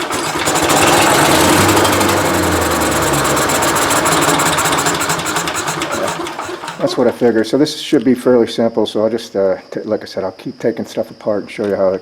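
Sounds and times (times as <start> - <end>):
small engine running: 0.0 - 7.3.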